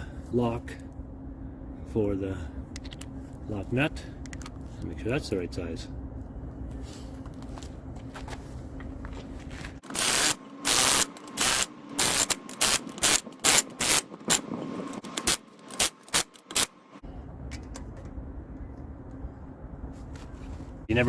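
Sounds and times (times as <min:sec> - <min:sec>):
faint steady hum: 0:00.0 - 0:21.0
impact wrench bursts: 0:09.8 - 0:16.8.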